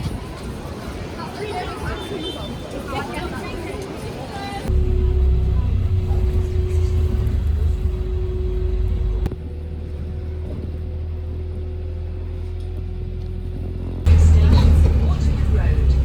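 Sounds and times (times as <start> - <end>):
steady low rumble with hum: 4.7 - 16.0.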